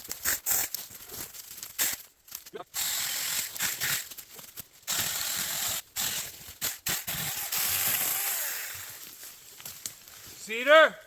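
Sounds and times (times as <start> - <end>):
chainsaw cutting through branch: 2.8 - 4.1, 4.9 - 9.0.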